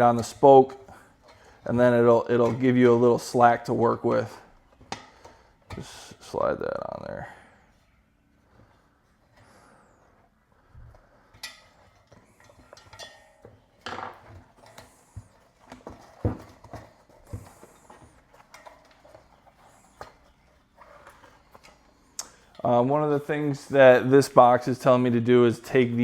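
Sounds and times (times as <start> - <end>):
tire levers clicking and scraping: 10.7 - 22.6.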